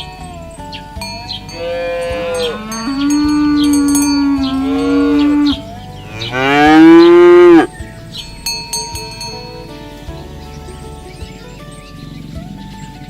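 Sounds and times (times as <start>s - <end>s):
cattle mooing: 1.5s - 7.7s.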